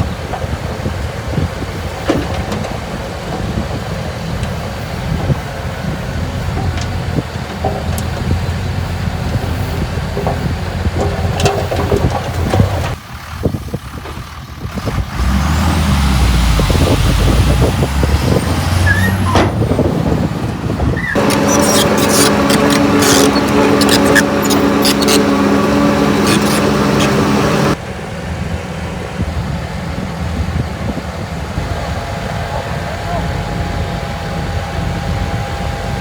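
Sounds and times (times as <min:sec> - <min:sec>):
diesel construction machinery running: 0:00.0 - 0:36.0
metallic clanks: 0:21.1 - 0:27.8.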